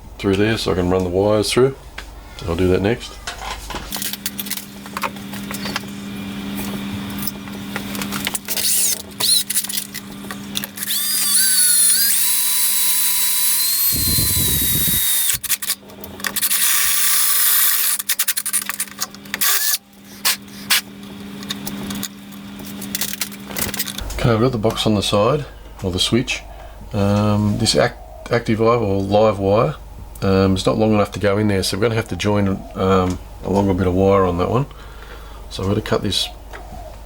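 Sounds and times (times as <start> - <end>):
electric drill motor hum: 6.6 - 24.0
drill bit squealing: 8.5 - 9.9, 10.6 - 18.6, 19.4 - 20.8.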